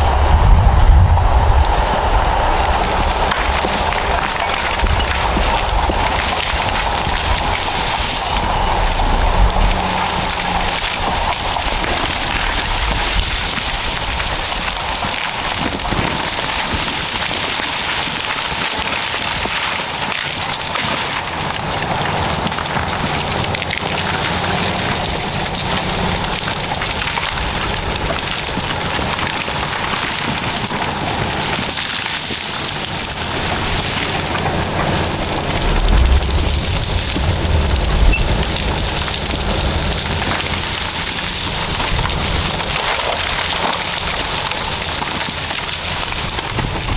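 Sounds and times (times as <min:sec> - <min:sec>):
low rumble: 0:00.0 - 0:14.7, 0:33.0 - 0:46.9
diesel engines running: 0:00.0 - 0:46.9.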